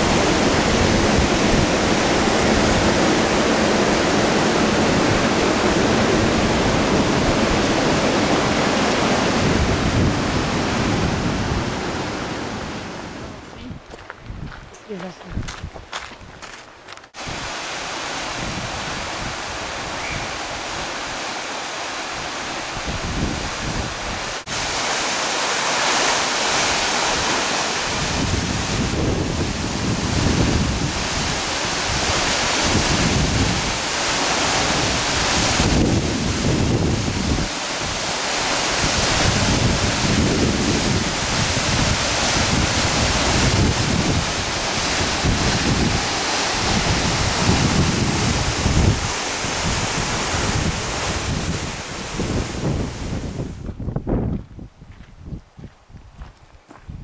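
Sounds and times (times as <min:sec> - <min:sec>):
steady rushing noise: 0:00.0 - 0:13.4
wind buffeting microphone: 0:00.0 - 0:16.6, 0:18.2 - 0:21.1, 0:22.1 - 0:24.8, 0:27.9 - 0:57.0.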